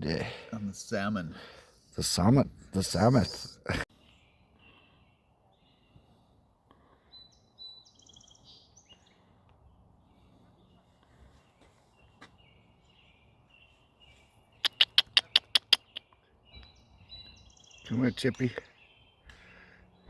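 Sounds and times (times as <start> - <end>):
small birds chirping: 0.0 - 20.0.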